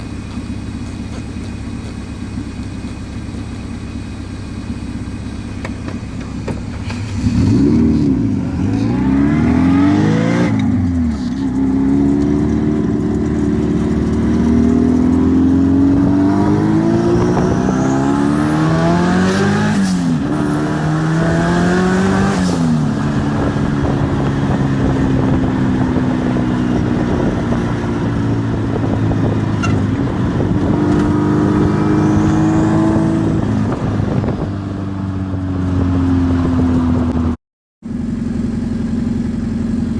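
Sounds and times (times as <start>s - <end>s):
turbocharged engine revving: 6.7s - 34.5s.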